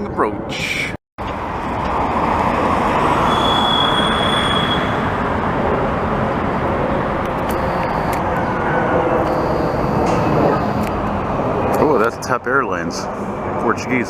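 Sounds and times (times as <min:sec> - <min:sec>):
jet engines roaring: 0:00.0 - 0:14.0
thin high whine: 0:03.1 - 0:05.4, 0:07.2 - 0:12.0.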